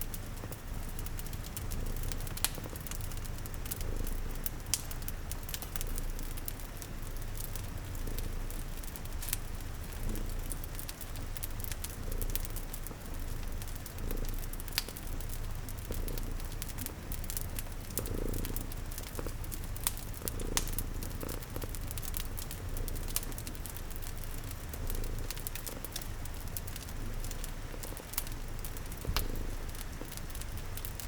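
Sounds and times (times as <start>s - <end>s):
cat purring: 0.0s - 31.0s
fire crackling and popping: 0.0s - 31.0s
rain hissing: 12.0s - 31.0s.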